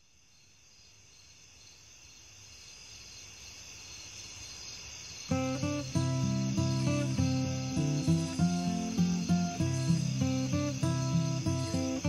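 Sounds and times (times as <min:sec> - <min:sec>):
acoustic guitar picking: 0:05.3 - 0:12.0.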